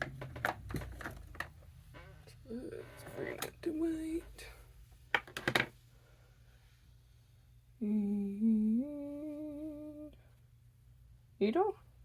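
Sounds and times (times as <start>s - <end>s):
woman humming: 7.8s - 10.2s.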